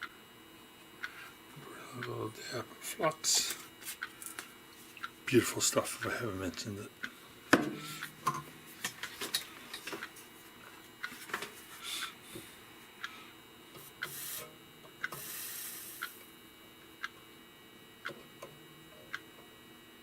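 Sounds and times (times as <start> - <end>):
flux sizzling hiss: 15.2 - 16.0.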